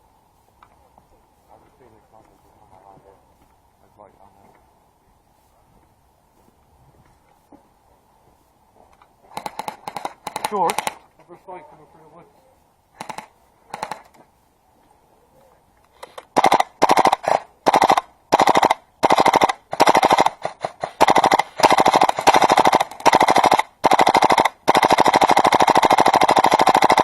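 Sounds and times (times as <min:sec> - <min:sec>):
airsoft rifle automatic bursts: 0:09.3 - 0:11.1, 0:13.0 - 0:14.1, 0:16.0 - 0:27.0.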